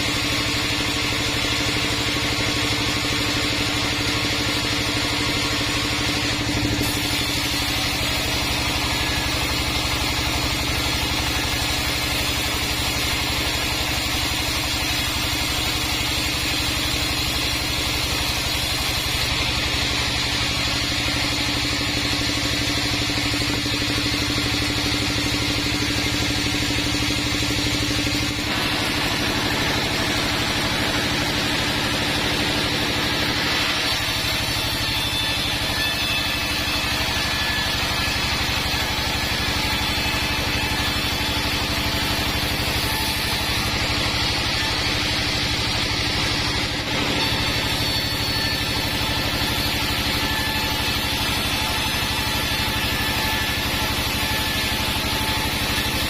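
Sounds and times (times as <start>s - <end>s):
band sawmill sawing wood: 0.0s - 56.0s.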